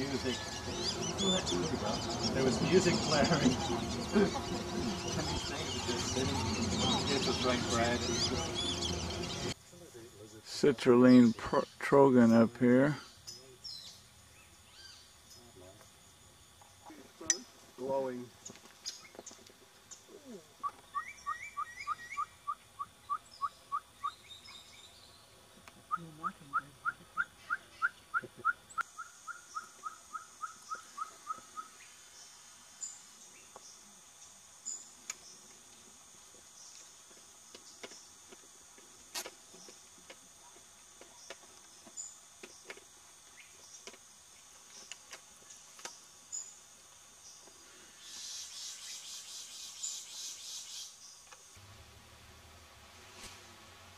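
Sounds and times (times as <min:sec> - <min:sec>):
bird singing hollow notes: 0:00.0 - 0:09.6
faint chirps: 0:00.0 - 0:37.0, 0:39.6 - 0:51.4
high insect trill: 0:00.0 - 0:53.9
insect buzz: 0:00.0 - 0:53.9.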